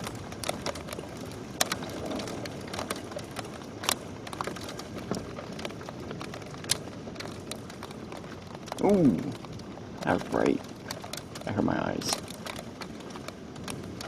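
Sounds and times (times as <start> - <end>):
hailstones ticking and tapping: 0.0 - 14.0.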